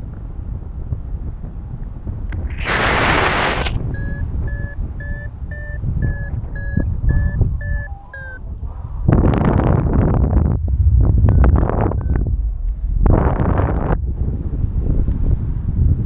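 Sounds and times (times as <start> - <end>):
wind rumble on microphone: 0.0 - 16.0
variometer beeping: 3.2 - 8.7, 11.3 - 12.3.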